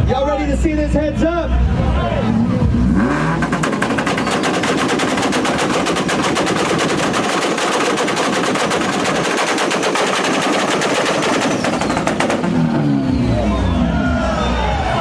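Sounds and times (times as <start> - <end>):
exhaust pops and bangs: 2.8 - 13.8.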